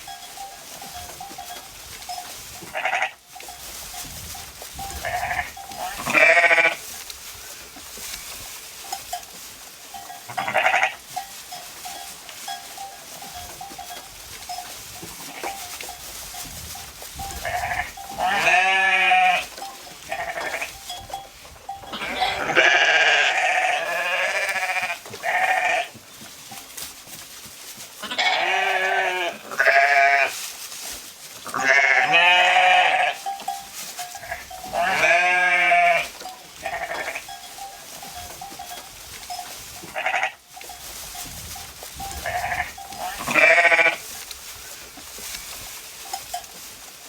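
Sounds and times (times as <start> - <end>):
sheep bleating: 2.7 - 3.2, 4.9 - 6.8, 10.3 - 11.0, 17.3 - 20.8, 21.8 - 25.9, 28.0 - 30.3, 31.5 - 33.3, 34.2 - 37.4, 39.8 - 40.4, 42.1 - 44.0.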